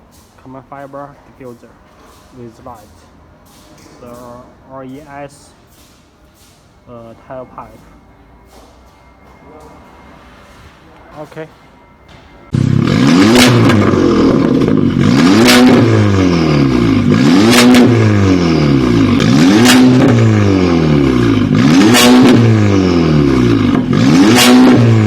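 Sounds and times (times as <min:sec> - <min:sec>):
car engine revving: 0:12.1 - 0:25.0.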